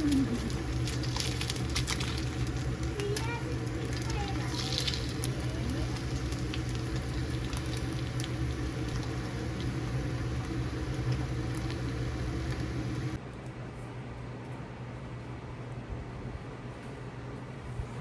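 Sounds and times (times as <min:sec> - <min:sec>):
eggs sizzling in a pan: 0:00.0 - 0:13.2
low hum: 0:00.0 - 0:13.2.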